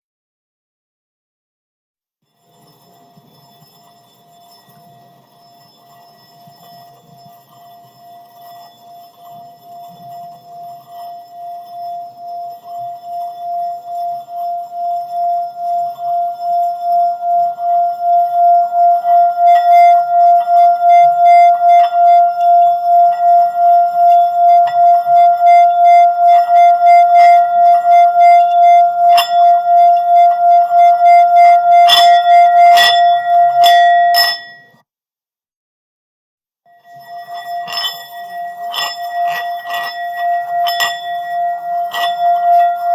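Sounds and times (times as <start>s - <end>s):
singing bowl ringing tone: 2.4s - 34.8s, 36.7s - 42.9s
sharp clinks: 31.8s - 34.8s, 36.9s - 42.9s.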